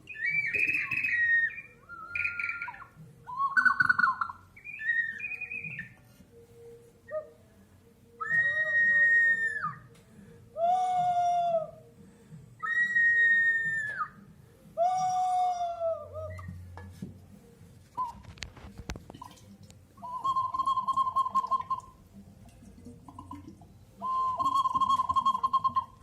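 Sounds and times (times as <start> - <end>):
ceramic whistling jars: 0.0 - 7.5, 8.1 - 10.0, 12.6 - 14.2, 14.8 - 17.0, 17.8 - 22.3, 23.0 - 26.0.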